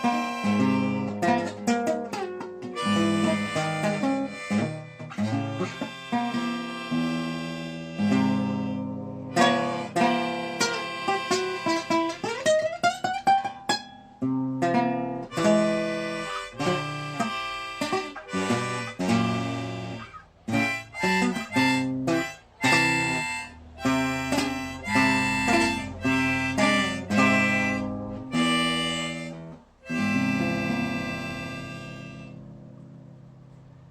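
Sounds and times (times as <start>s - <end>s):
harmonica: 0.0s - 13.6s, 14.7s - 32.4s
acoustic guitar plucking: 0.0s - 33.9s.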